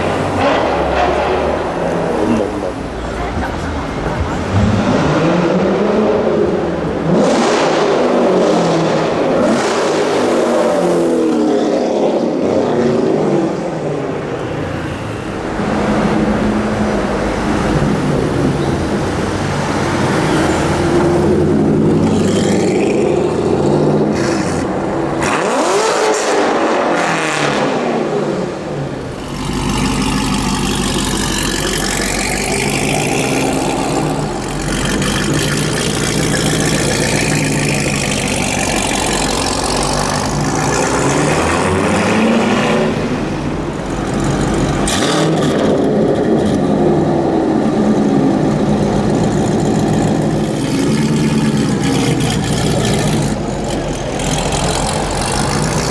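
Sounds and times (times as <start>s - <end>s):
car engines revving: 0.0s - 55.9s
engine idling deep rumble: 47.5s - 55.9s.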